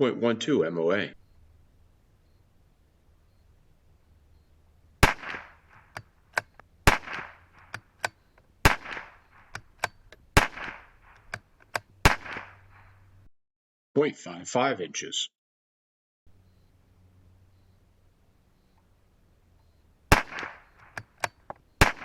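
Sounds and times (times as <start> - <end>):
rifle bolt clicks: 5.0 - 12.9, 20.1 - 22.0
rifle shots with ringing tail: 5.0 - 13.2, 20.1 - 22.0.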